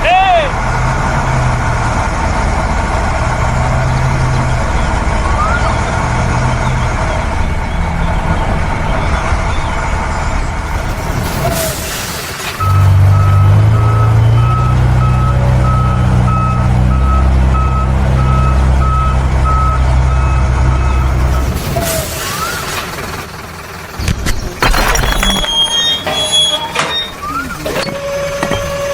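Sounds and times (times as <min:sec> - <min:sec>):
truck engine running: 0:00.0 - 0:26.0
reversing alarm beeping: 0:12.6 - 0:21.5.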